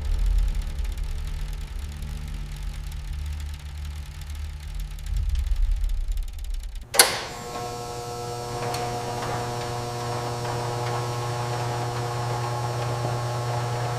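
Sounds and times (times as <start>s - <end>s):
steady low hum: 0.0s - 13.9s
sharp click: 6.9s - 9.5s.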